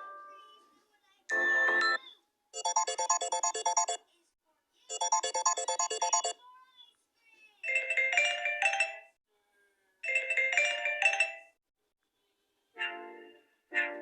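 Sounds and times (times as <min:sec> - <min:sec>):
ringtone melody from tablet speaker: 0:01.3 - 0:02.0, 0:02.6 - 0:04.0, 0:04.9 - 0:06.3.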